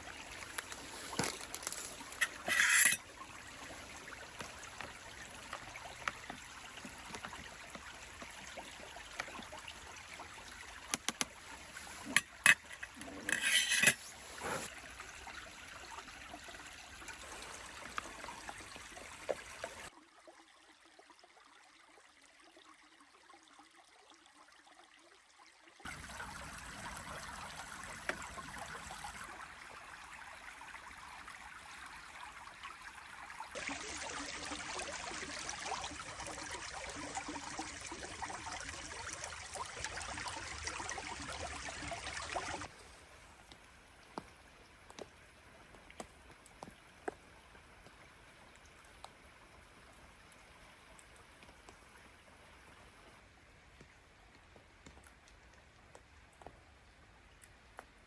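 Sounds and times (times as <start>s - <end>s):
stream running: 0.0s - 58.0s
rustling scrapes: 0.4s - 3.0s, 11.7s - 14.7s.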